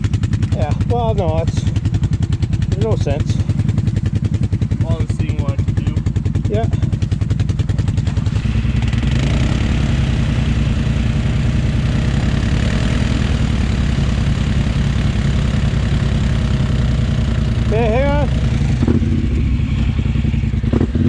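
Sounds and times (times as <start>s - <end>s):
atv engine revving: 0.0s - 21.0s.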